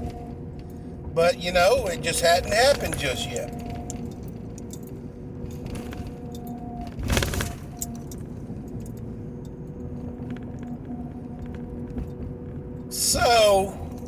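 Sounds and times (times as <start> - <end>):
light clicks and jingles: 2.7 - 6.7, 7.7 - 12.9.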